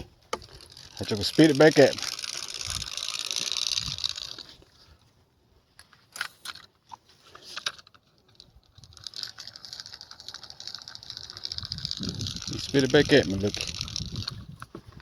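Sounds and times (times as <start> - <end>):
fishing reel cranking: 0.3 - 4.8, 7.4 - 14.7.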